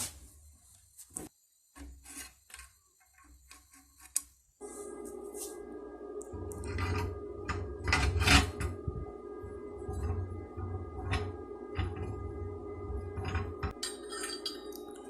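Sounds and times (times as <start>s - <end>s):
electric motor humming: 5.6s - 13.8s
metallic clinks and knocks: 13.2s - 15.0s.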